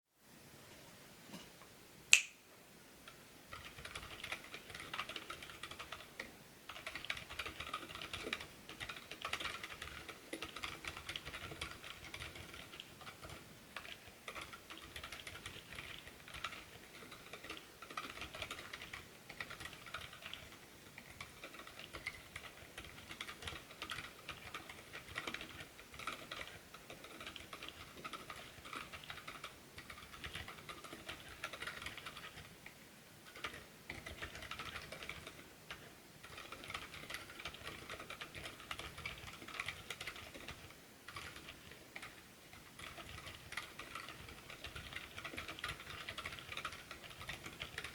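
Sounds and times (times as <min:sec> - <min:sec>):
single sharp click: 0:02.1 - 0:02.4
typing on mechanical keyboard: 0:03.5 - 0:32.6, 0:33.2 - 0:47.9.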